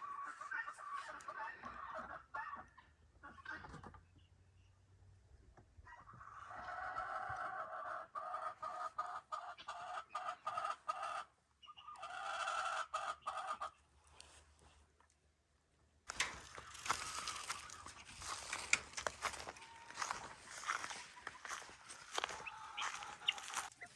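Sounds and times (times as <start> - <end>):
chickens clucking: 0.0 - 4.2, 5.9 - 13.9, 16.1 - 23.9
footsteps crunching through snow: 16.1 - 23.9.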